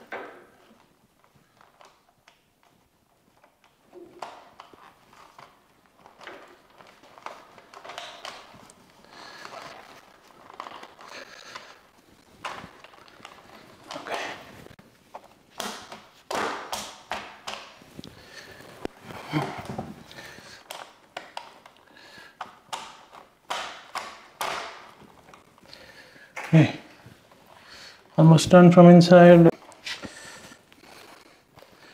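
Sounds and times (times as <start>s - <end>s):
cables tapping and clicking: 0.0s - 28.2s
rustling scrapes of wire and plastic: 1.3s - 16.3s.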